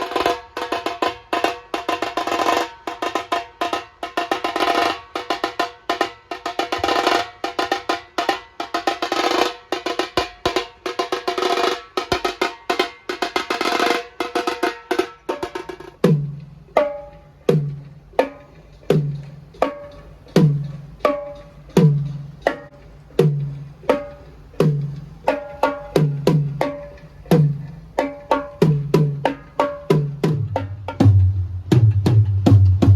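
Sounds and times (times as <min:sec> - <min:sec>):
tuned drum strikes with low ring: 0:16.0 - 0:32.9
fast drum roll: 0:20.4 - 0:32.9.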